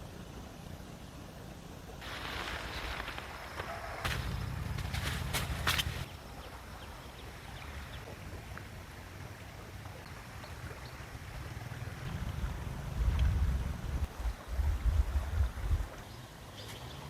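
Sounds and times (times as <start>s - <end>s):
wind rumbling on microphone: 2.0s - 9.0s, 9.9s - 16.0s.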